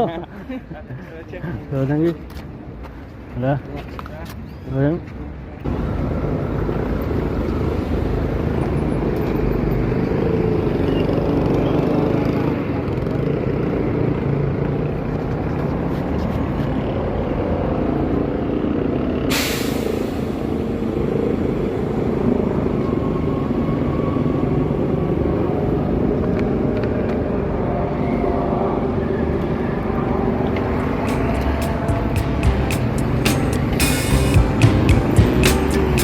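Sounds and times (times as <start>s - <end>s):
traffic rumble: 0.0s - 36.0s
air brake hiss: 19.3s - 20.8s, 33.3s - 34.4s.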